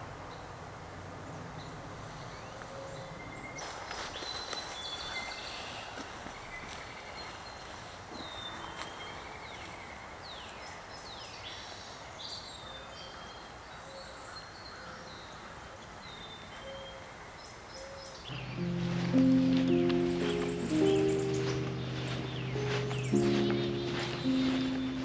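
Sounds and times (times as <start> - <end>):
steady outdoor hiss: 0.0 - 25.0
wild birds calling: 0.0 - 25.0
music: 18.4 - 25.0.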